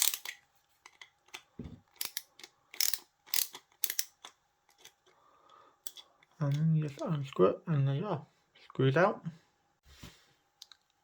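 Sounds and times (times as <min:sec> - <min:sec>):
ratchet driver clicking: 0:01.9 - 0:04.3.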